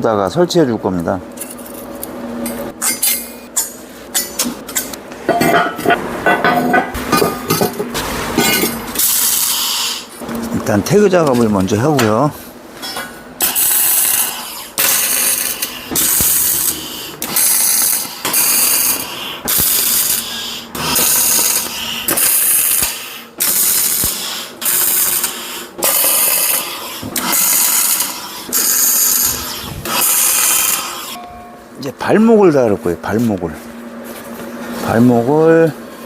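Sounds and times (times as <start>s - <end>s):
arc welder crackling: 8.0s - 31.2s.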